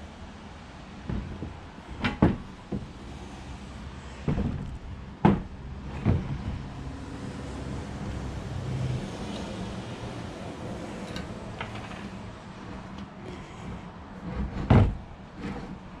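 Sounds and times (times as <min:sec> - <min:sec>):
metallic knocks and clunks: 0:01.0 - 0:03.0, 0:04.2 - 0:06.7, 0:11.0 - 0:15.8.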